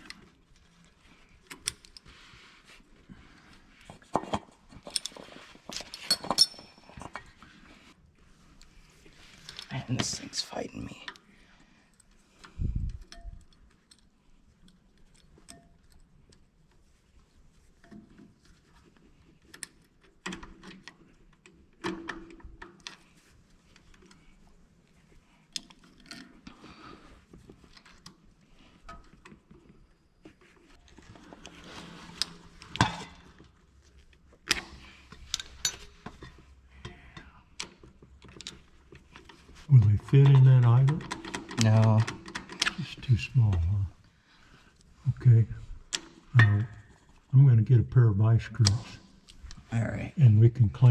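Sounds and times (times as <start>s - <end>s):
hand tools clinking on metal: 5.9s - 6.8s.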